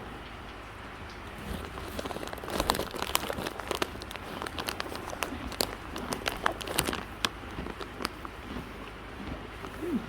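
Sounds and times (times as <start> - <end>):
plastic wrapper crinkling: 1.5 - 8.4.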